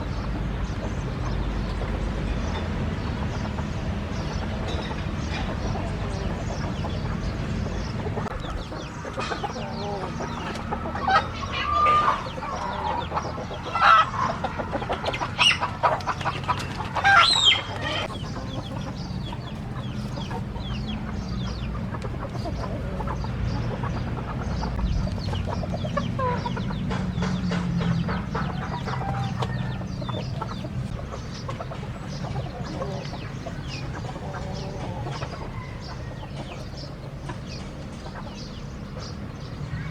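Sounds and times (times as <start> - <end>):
chickens clucking: 0.0 - 39.9
rooster crowing: 9.5 - 13.1, 28.4 - 30.1, 33.7 - 37.0
steady low hum: 18.0 - 39.9.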